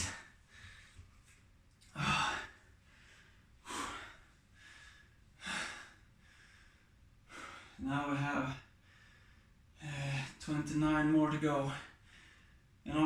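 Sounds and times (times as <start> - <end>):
man breathing hard: 0.0 - 1.1, 1.9 - 7.8, 8.8 - 10.3, 11.9 - 12.7.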